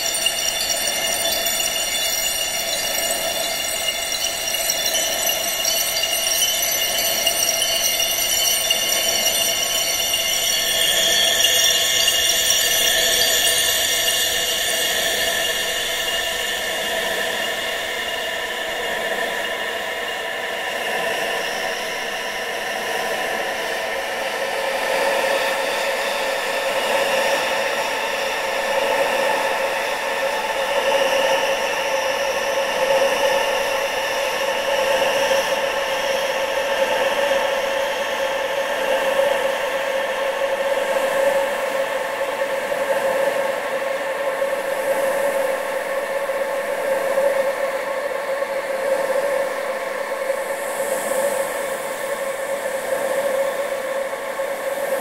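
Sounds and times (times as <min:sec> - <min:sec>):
sustained whistling tones: 0:00.0 - 0:19.8
steady wind: 0:00.0 - 0:21.4.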